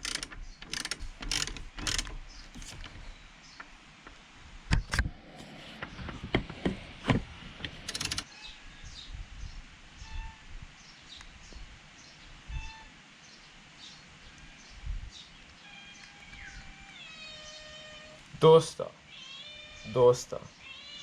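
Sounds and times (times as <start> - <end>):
ratchet wrench clicking: 0.0 - 2.8, 7.9 - 8.3
metal tools knocking: 0.0 - 3.0.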